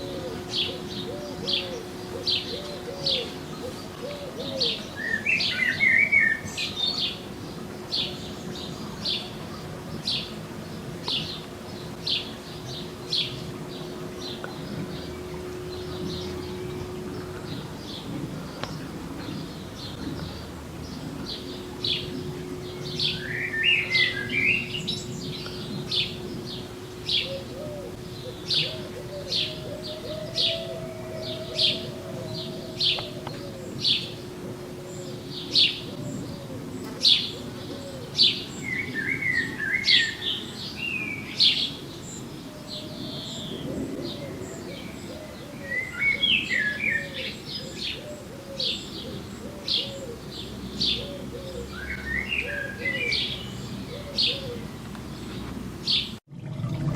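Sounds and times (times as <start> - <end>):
pigeon cooing: 0.0 - 6.2, 27.1 - 38.4, 42.5 - 54.8
bird warbling: 0.0 - 7.2
songbirds chirping: 0.0 - 56.2.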